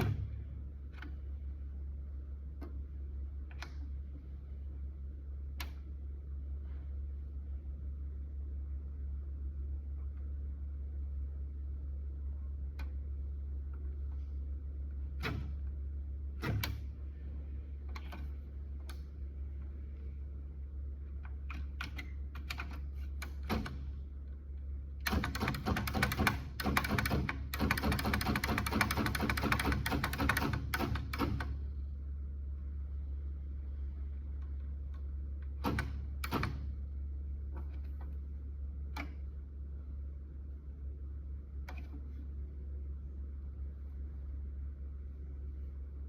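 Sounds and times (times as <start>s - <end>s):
steady low hum: 0.0s - 46.0s
electric typewriter typing: 25.0s - 31.5s.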